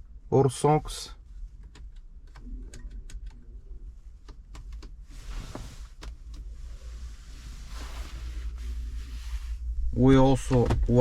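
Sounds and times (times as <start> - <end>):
low hum: 6.4 - 11.0.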